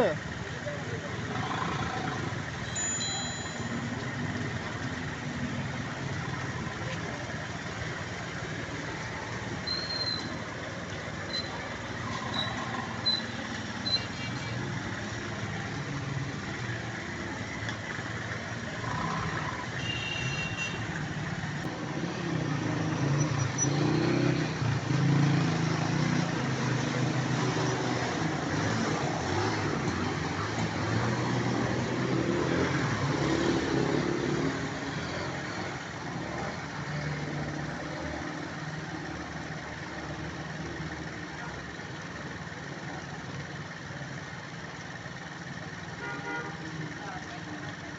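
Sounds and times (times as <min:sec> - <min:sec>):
vehicle engines in floodwater: 0:00.0 - 0:47.9
short high beeps: 0:02.7 - 0:03.8.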